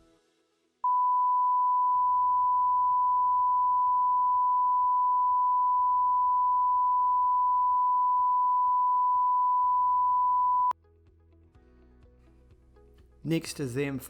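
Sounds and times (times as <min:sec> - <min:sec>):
steady sine-wave tone from speaker: 0:00.8 - 0:10.7.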